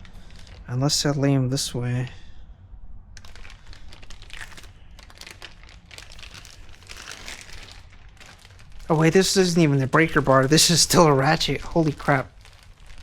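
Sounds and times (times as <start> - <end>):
packaging crinkling: 0.0 - 0.8, 3.2 - 13.0.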